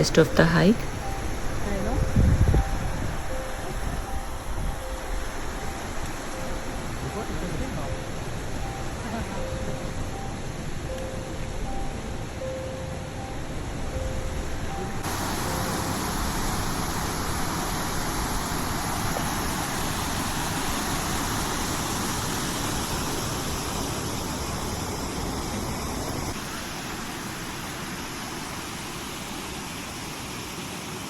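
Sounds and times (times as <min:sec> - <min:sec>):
water rushing: 0:00.0 - 0:31.0.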